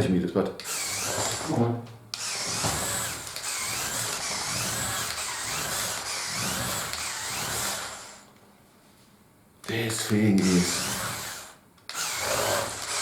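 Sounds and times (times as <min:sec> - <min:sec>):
toy motor whir and whine: 0:00.6 - 0:01.4, 0:02.2 - 0:08.2, 0:10.4 - 0:13.0.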